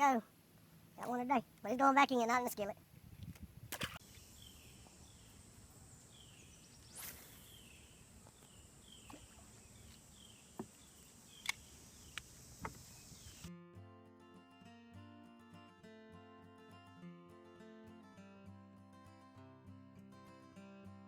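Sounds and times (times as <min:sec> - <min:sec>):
brief swish: 0:06.9 - 0:07.6
sharp clicks: 0:11.4 - 0:12.3.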